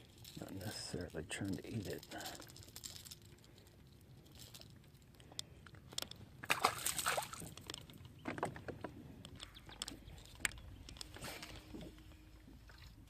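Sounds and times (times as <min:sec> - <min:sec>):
water sloshing and splashing: 0:06.2 - 0:08.9, 0:11.0 - 0:13.0.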